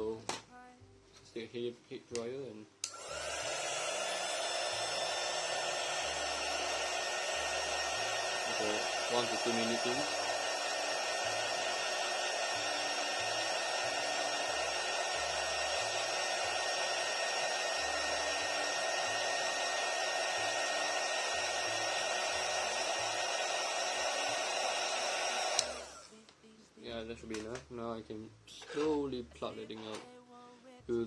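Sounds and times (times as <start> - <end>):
hair dryer blowing: 2.8 - 26.2.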